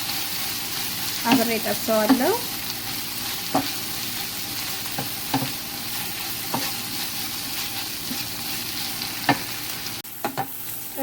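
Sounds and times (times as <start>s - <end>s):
onion sizzling in oil: 0.0s - 11.0s
spoon knocking against pan: 5.0s - 5.6s, 6.5s - 6.8s, 10.2s - 10.6s.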